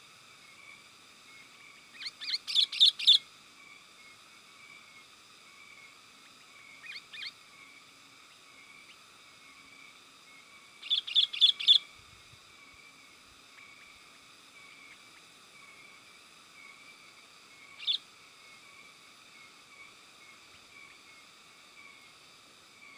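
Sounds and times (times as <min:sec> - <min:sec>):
bulbul calls: 0:01.9 - 0:03.2, 0:06.7 - 0:07.4, 0:10.7 - 0:11.9, 0:17.5 - 0:18.1.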